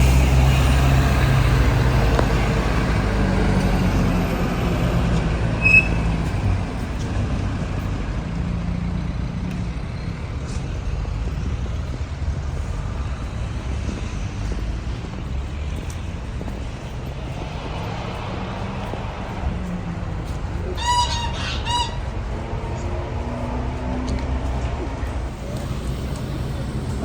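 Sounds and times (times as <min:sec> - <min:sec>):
large vehicle engine rumbling: 0:00.0 - 0:27.0
short high beep: 0:05.6 - 0:06.2.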